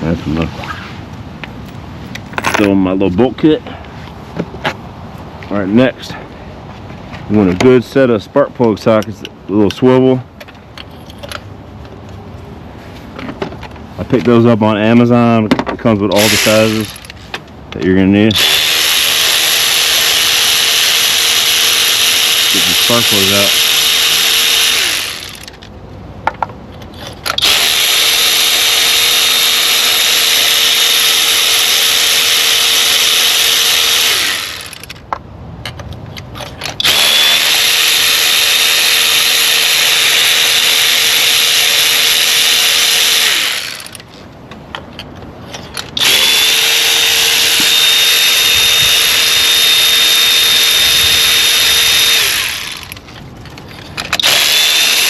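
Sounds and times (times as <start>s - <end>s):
power tool motor whine: 16.2s - 17.1s, 18.4s - 25.6s, 27.4s - 35.0s, 36.8s - 44.0s, 46.0s - 53.0s, 54.2s - 55.0s.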